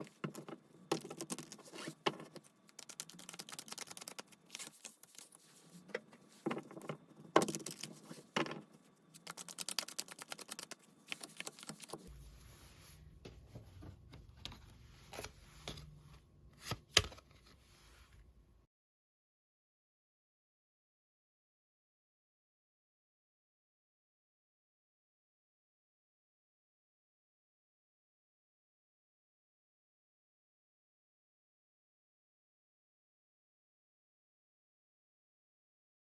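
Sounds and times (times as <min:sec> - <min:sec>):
cards being shuffled: 0:00.0 - 0:12.1.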